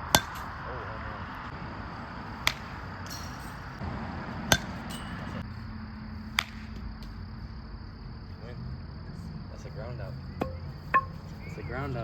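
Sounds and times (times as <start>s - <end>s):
baseball bat hitting ball: 0.0s - 0.6s, 2.3s - 3.7s, 4.4s - 5.4s, 6.3s - 6.8s, 10.4s - 11.4s.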